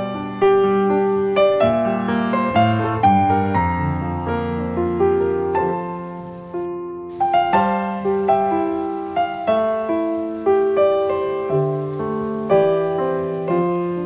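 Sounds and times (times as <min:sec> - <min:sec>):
solo piano notes: 0:00.0 - 0:14.0.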